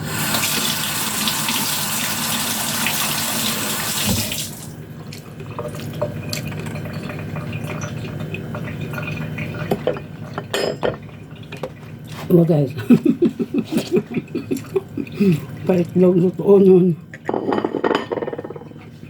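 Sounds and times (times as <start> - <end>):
tap water running into sink: 0.0 - 12.2.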